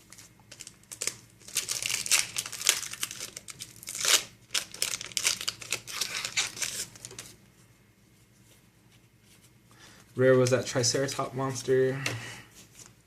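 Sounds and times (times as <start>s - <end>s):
foil wrapper tearing and crinkling: 0.1s - 7.3s.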